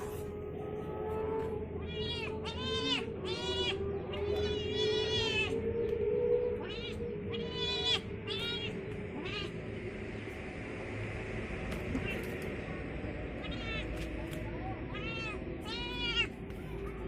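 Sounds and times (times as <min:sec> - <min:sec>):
cats meowing: 0:01.8 - 0:05.6, 0:06.6 - 0:09.6, 0:13.4 - 0:17.0.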